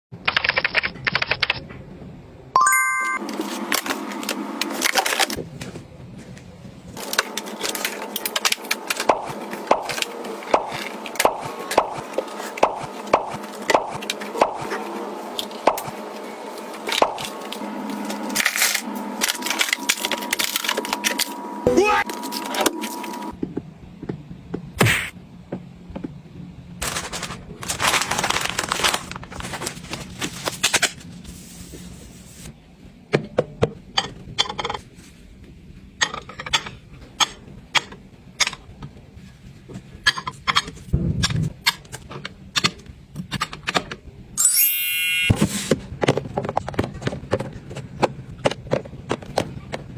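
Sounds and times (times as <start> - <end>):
rustling: 26.8 - 31.3.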